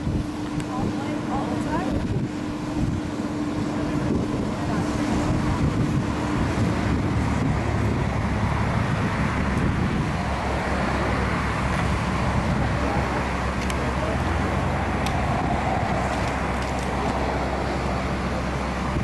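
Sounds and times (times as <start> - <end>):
low engine rumble: 0.0 - 19.0
wind noise on microphone: 0.0 - 19.0.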